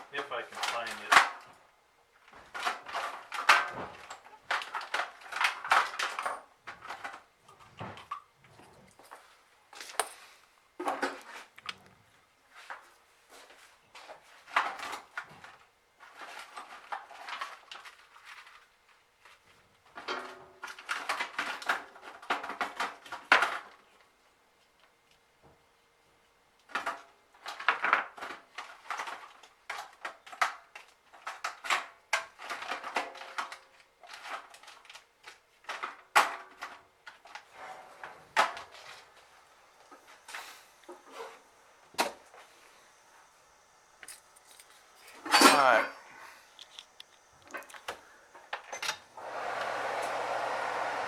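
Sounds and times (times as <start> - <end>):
tools clattering and rattling: 44.0 - 49.1.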